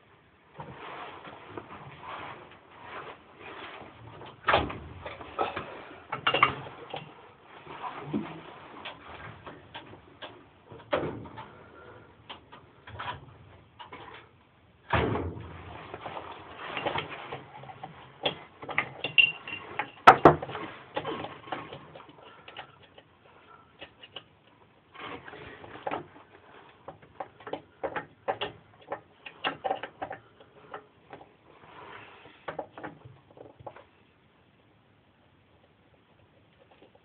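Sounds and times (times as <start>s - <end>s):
metal parts clicking and clattering: 16.6s - 23.1s.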